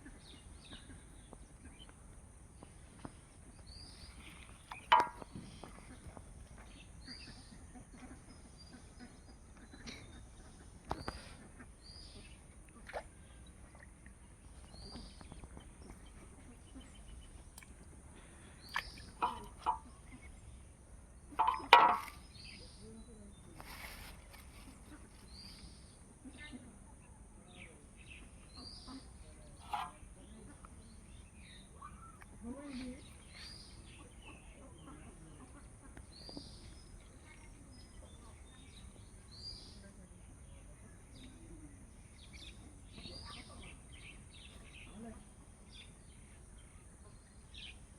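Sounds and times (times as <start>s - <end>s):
bird chirping: 3.5s - 12.4s, 18.6s - 26.0s
faint bird calls: 21.3s - 47.8s.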